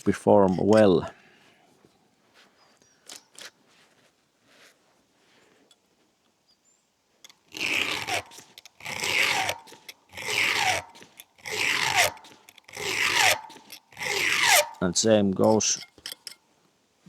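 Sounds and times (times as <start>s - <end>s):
file rasping on chainsaw chain: 0.4s - 1.1s, 7.5s - 14.8s, 15.4s - 16.4s.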